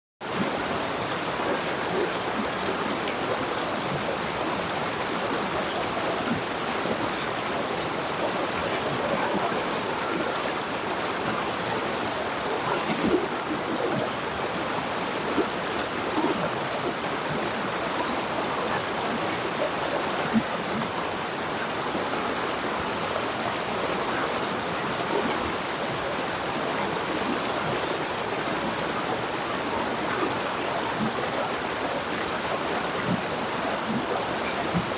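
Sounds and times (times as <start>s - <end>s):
river water rushing over rocks: 0.2s - 34.9s
small water splashes: 21.9s - 34.9s.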